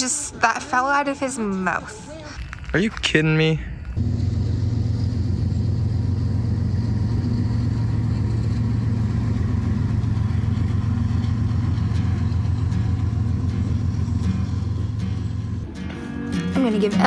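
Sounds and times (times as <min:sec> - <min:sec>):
low engine hum: 0:02.4 - 0:15.7.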